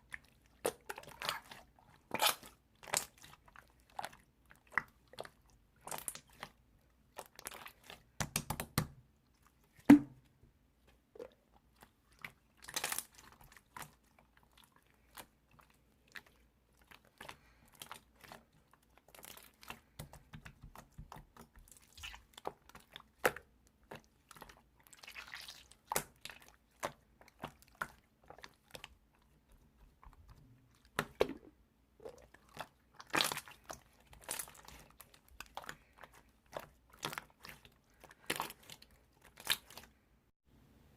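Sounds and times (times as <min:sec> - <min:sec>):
slime squished by hand: 0:29.8 - 0:39.9.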